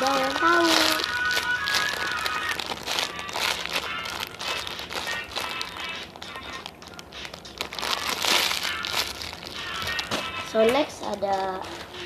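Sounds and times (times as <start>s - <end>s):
squishy toys rustling and crinkling: 0.0s - 10.3s
faint background music: 0.0s - 12.0s.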